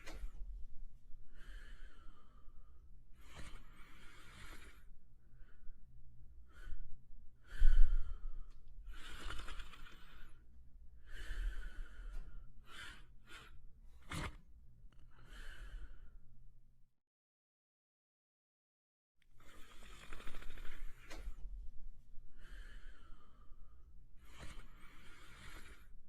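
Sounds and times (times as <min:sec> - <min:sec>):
dog snoring softly: 0:03.1 - 0:05.6, 0:08.9 - 0:10.4, 0:19.4 - 0:21.6, 0:22.4 - 0:26.0.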